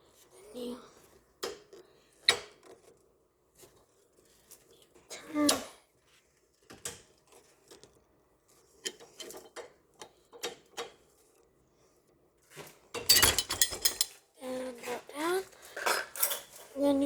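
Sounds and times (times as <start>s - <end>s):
metallic clatter: 13.0s - 14.2s.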